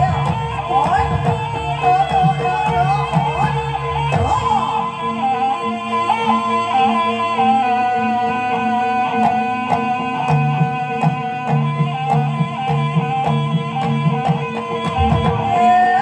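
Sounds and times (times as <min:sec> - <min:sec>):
drum strokes: 0:09.2 - 0:16.0.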